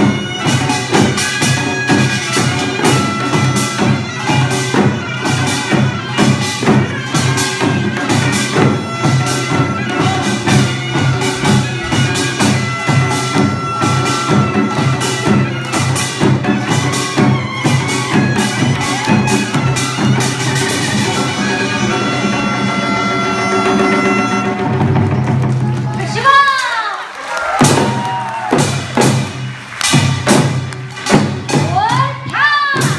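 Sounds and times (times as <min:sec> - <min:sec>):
reed wind instrument: 0:00.0 - 0:25.8
rhythmic drumming: 0:00.0 - 0:26.5, 0:27.4 - 0:32.9.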